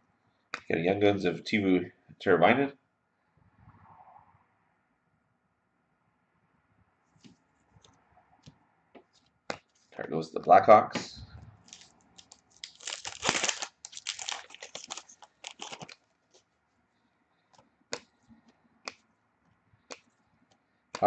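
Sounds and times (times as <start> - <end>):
wrapper tearing and crinkling: 11.6 - 16.4.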